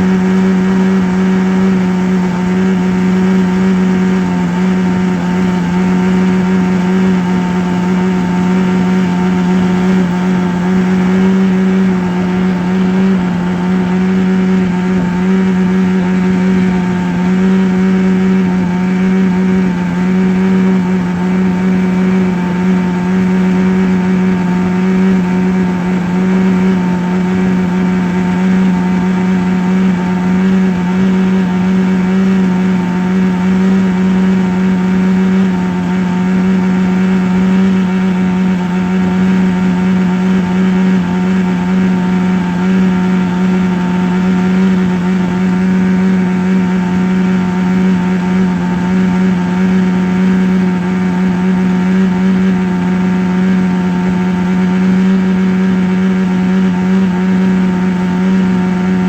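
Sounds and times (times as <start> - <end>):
loud droning hum: 0.0 - 59.0.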